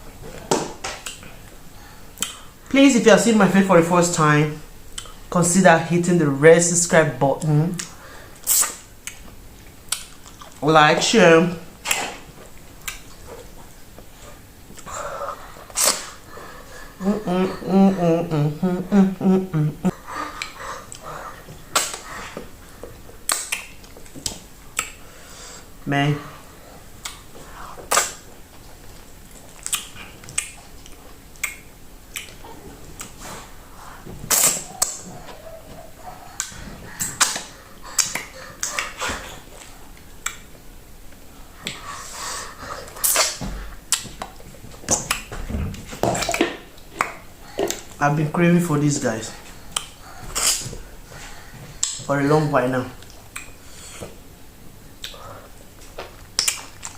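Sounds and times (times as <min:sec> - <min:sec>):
person chewing: 0:04.9 - 0:05.2, 0:07.8 - 0:10.6, 0:11.8 - 0:17.8, 0:19.2 - 0:25.8, 0:26.8 - 0:33.6, 0:34.2 - 0:48.0, 0:49.5 - 0:52.1, 0:53.0 - 0:54.2, 0:55.0 - 0:56.9
wet mouth smacks: 0:07.8 - 0:10.6, 0:12.8 - 0:13.2, 0:15.7 - 0:16.2, 0:21.7 - 0:22.1, 0:23.3 - 0:25.0, 0:27.0 - 0:28.3, 0:29.5 - 0:32.4, 0:34.3 - 0:35.1, 0:36.4 - 0:40.4, 0:42.9 - 0:45.4, 0:49.7 - 0:50.8, 0:51.8 - 0:52.1, 0:53.0 - 0:53.6, 0:56.3 - 0:56.9
chewing clicks: 0:29.3 - 0:32.4, 0:36.3 - 0:39.0, 0:39.6 - 0:40.5, 0:56.2 - 0:56.9.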